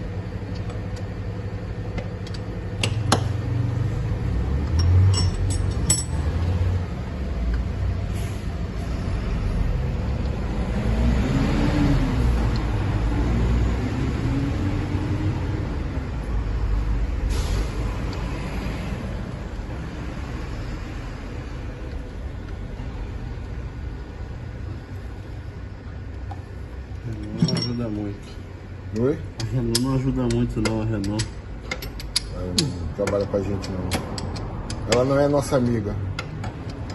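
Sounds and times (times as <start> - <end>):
vehicle engine rumbling: 0.0 - 36.9
sharp metallic clicks: 28.9 - 36.9.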